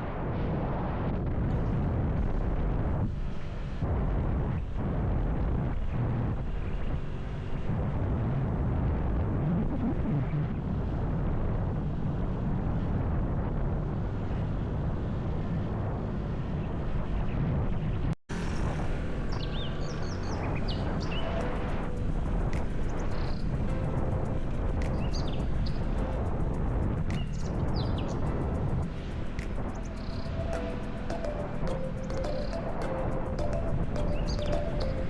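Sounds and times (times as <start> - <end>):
wind buffeting microphone: 0.0 - 35.0
motorcycle engine running: 18.3 - 35.0
birds chirping: 18.4 - 24.0, 24.8 - 26.0, 27.1 - 28.6, 29.3 - 35.0.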